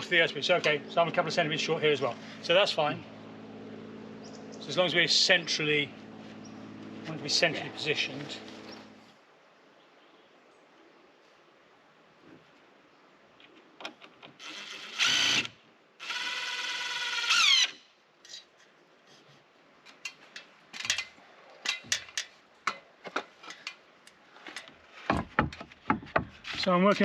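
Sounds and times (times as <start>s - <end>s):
power drill whining: 14.4s - 17.8s.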